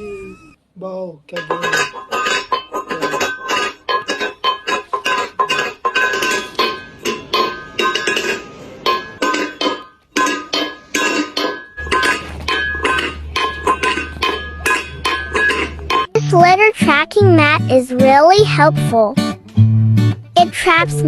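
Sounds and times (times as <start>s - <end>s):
music of repeated struck notes: 6.3s - 21.0s.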